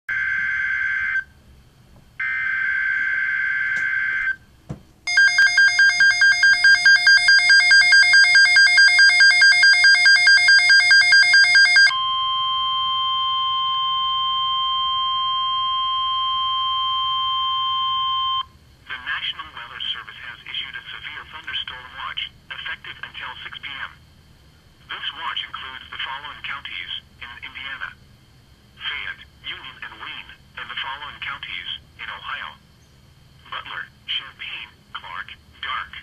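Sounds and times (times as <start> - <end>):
steady electronic alert tone: 5.1 - 14.5
rapidly pulsing electronic beep: 5.1 - 15.6.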